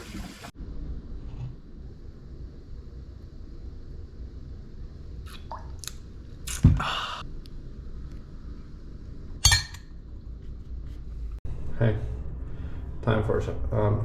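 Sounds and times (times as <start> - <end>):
steady low rumble: 0.5 - 5.2.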